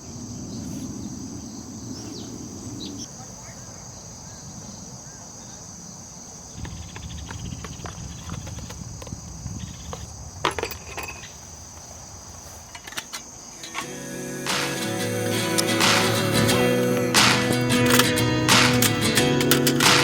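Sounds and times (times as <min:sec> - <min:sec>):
crickets chirring: 0:00.0 - 0:20.0
camping gear clicks and clinks: 0:06.6 - 0:13.9, 0:17.6 - 0:20.0.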